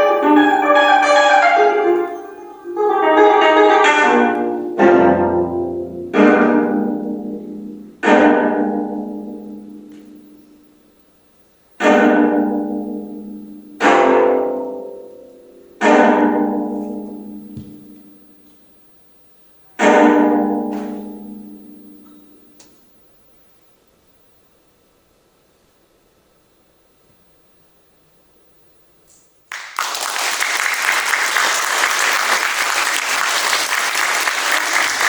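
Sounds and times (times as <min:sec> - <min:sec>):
plucked zither chords ringing: 0:11.8 - 0:18.0.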